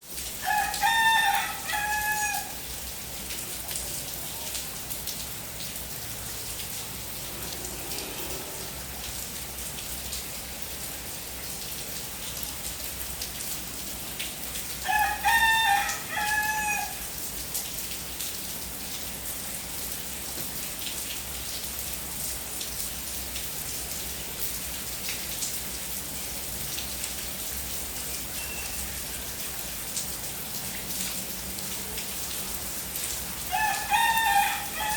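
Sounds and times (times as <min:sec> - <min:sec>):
rain falling: 0:00.0 - 0:34.9
rooster crowing: 0:00.4 - 0:02.6, 0:14.8 - 0:17.0, 0:33.5 - 0:34.9.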